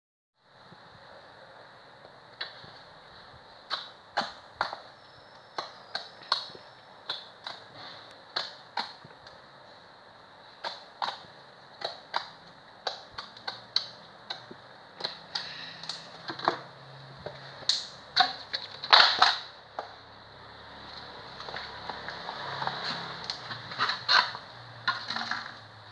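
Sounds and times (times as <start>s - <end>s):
slime being pressed by hand: 10.6s - 16.2s.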